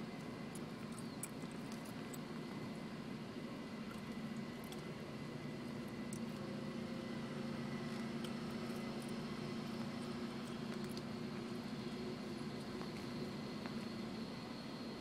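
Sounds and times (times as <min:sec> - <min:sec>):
car engine and road hum: 0:00.0 - 0:15.0.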